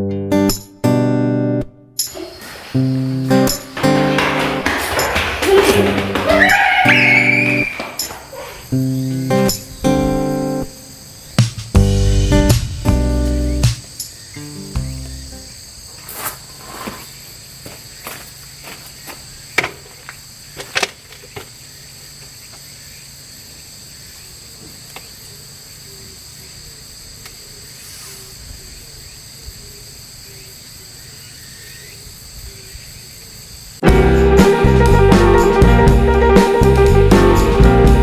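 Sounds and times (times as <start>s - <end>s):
insects chirring: 1.9s - 33.9s
sharp knocks: 2.0s - 8.3s.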